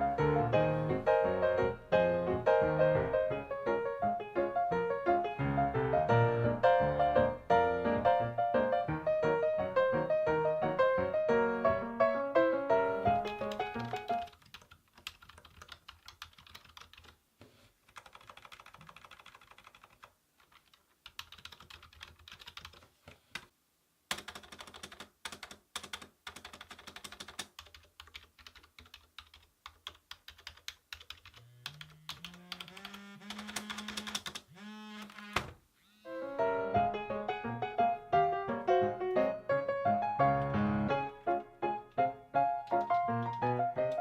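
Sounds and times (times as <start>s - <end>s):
keyboard keys clicking: 13.0s - 17.2s, 17.9s - 23.5s, 24.1s - 34.5s, 41.3s - 44.0s.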